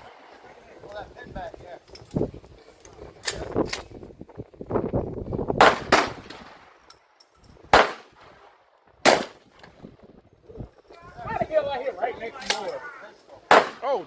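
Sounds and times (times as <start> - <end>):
gunshots: 5.6 - 6.8, 7.7 - 9.6, 13.5 - 14.0.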